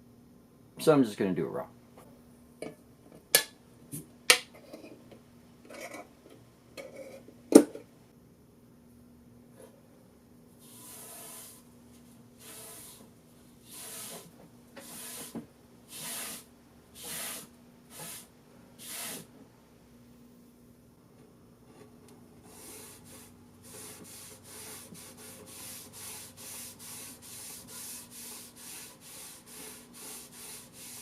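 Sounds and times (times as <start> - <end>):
rag swishing over wood: 22.5 - 31.0.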